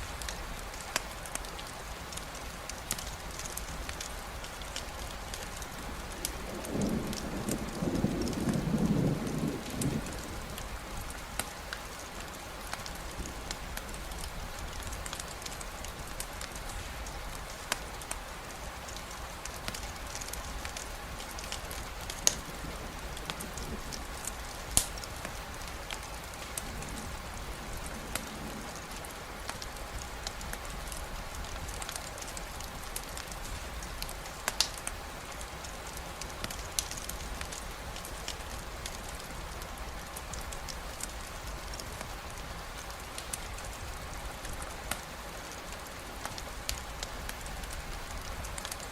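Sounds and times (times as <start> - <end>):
steady rain hiss: 0.0 - 48.9
sharp ticks and pops: 0.2 - 18.2, 23.1 - 26.7, 27.8 - 39.3.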